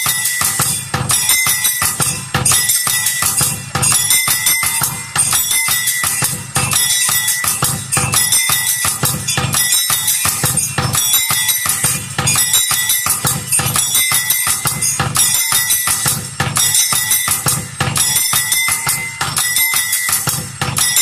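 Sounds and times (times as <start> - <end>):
drum-like beats: 0.0 - 21.0
jingling bells: 0.0 - 21.0
steady high ringing tone: 0.0 - 21.0.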